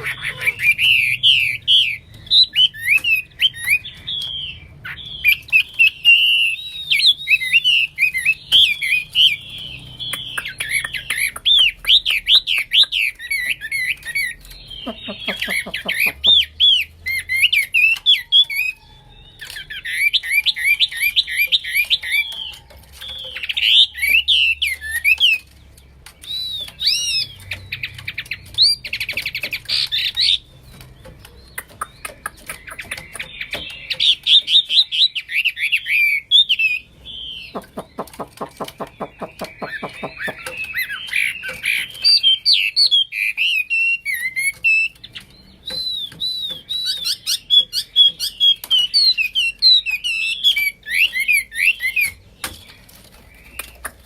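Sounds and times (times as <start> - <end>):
bird singing whistled notes: 0.0 - 25.5, 26.2 - 30.8, 31.4 - 54.0
bird rattling trill: 37.4 - 54.0.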